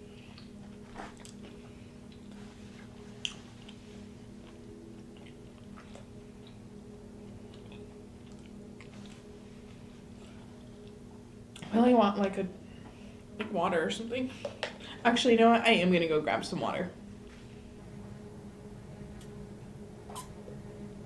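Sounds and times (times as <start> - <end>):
faint steady hum: 0.0 - 21.0
person chewing food: 0.2 - 3.8, 4.4 - 6.6, 7.2 - 9.3.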